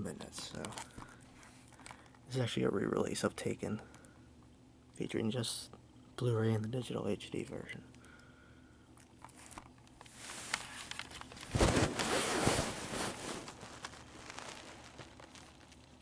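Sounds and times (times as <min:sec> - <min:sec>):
plastic wrap tearing and crinkling: 0:09.2 - 0:16.0.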